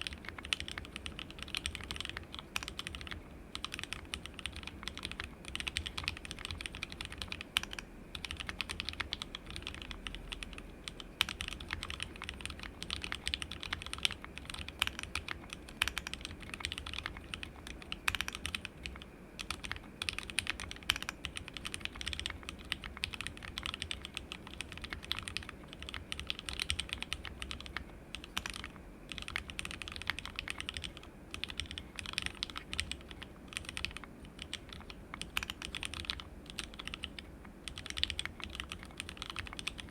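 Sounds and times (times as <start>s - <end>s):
fast mechanical keyboard typing: 0.0s - 39.9s.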